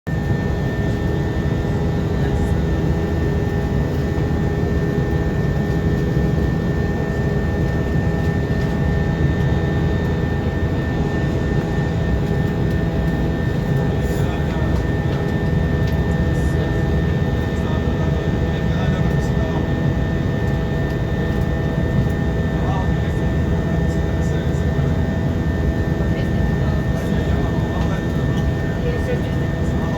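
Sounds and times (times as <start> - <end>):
airplane engines and airflow rushing: 0.1 - 29.9.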